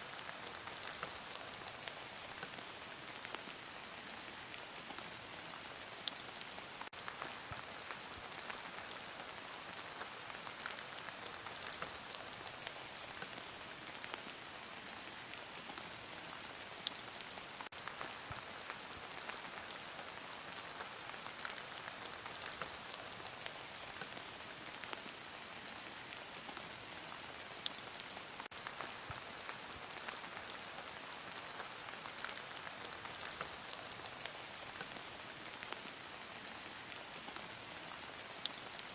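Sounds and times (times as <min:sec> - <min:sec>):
heavy rain falling: 0:26.9 - 0:38.9.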